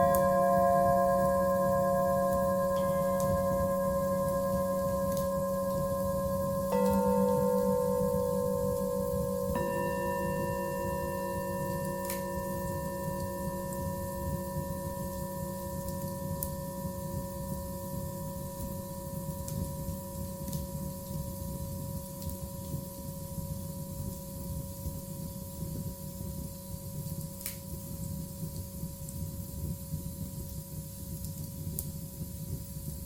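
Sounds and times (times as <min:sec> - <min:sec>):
sustained ringing tones: 0:00.0 - 0:20.3.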